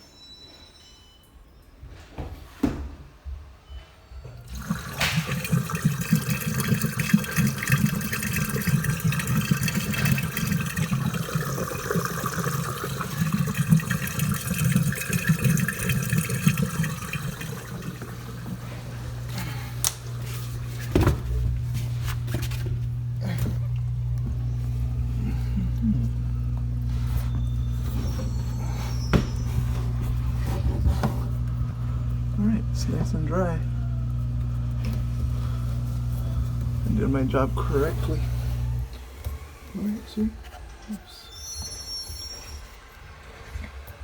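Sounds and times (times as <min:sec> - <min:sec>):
steady motor hum: 0:04.3 - 0:40.9
water rushing down drain: 0:04.4 - 0:23.9.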